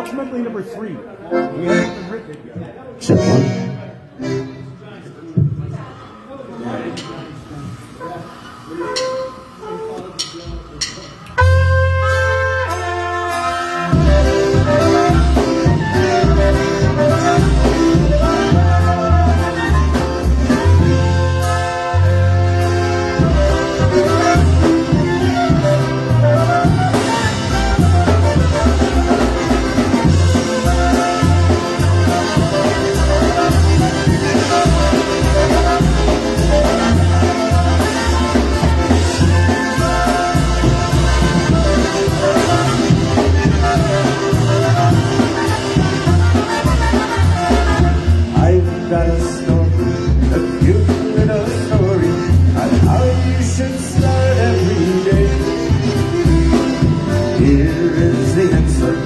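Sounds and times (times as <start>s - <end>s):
polka band playing: 1.2s - 5.7s, 7.8s - 59.0s.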